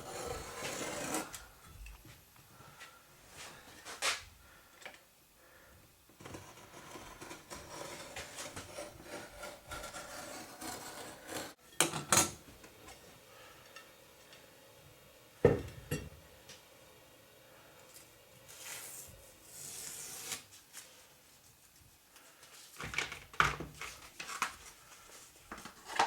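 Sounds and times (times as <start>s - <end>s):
scraping or rubbing: 0.0s - 1.4s, 6.2s - 11.6s.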